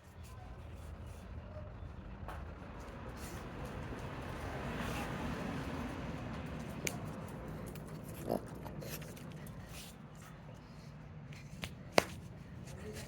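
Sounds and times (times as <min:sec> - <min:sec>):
dog snuffling and snorting: 0:07.5 - 0:10.0
dog grunt: 0:07.9 - 0:09.3.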